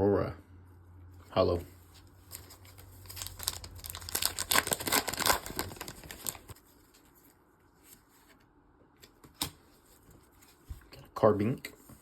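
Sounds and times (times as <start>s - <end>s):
foil wrapper tearing and crinkling: 2.3s - 6.6s.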